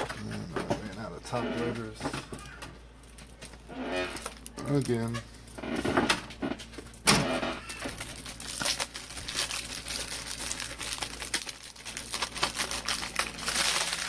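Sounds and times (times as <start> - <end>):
plastic packaging crinkling: 3.0 - 5.2, 7.6 - 14.0.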